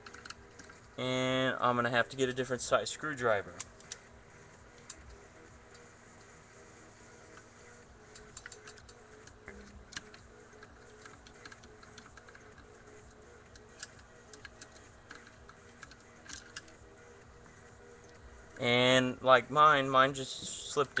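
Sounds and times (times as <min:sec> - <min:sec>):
faint steady hum: 0:00.0 - 0:21.0
screwdriver and metal parts clicking: 0:13.5 - 0:16.8.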